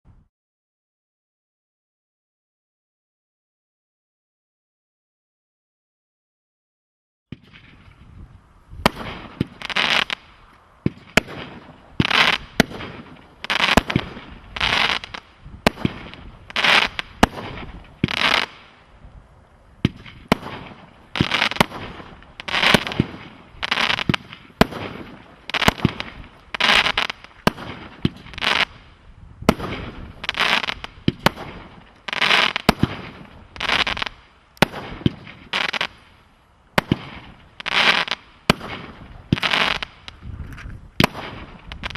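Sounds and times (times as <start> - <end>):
firework shots bursting: 8.8 - 18.8, 19.8 - 28.9, 29.5 - 36.1, 36.8 - 40.2, 41.0 - 41.9.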